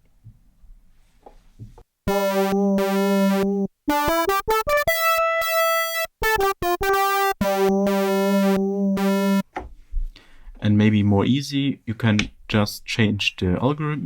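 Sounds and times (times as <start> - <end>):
synthesizer lead line: 2.1 - 9.4.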